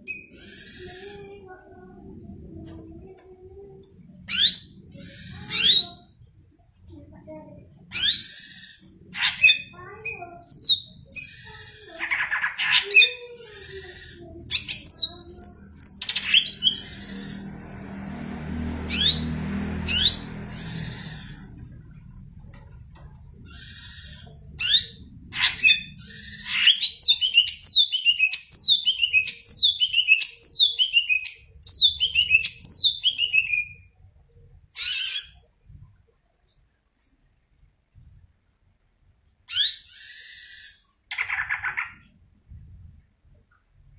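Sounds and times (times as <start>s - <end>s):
bird singing: 4.3s - 6.2s, 7.9s - 17.5s, 18.9s - 22.0s, 23.4s - 33.9s.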